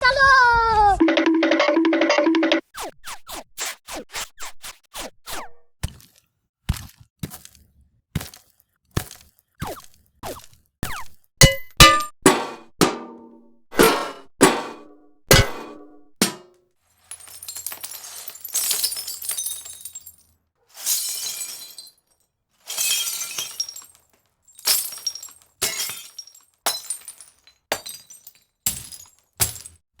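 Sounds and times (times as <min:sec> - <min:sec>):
glass shattering: 0:11.4 - 0:13.0, 0:13.8 - 0:16.4, 0:17.0 - 0:22.1, 0:22.7 - 0:29.8
bullet hit impacts: 0:11.4 - 0:13.1, 0:13.9 - 0:16.4.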